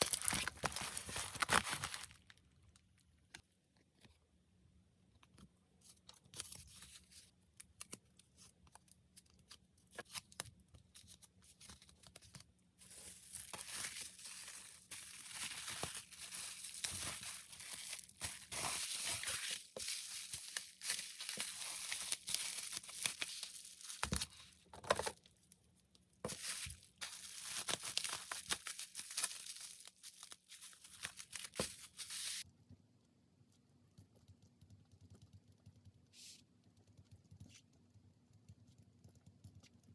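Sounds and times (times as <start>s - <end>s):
packing materials crinkling and tearing: 0.0s - 2.4s, 10.1s - 25.2s, 26.3s - 32.4s.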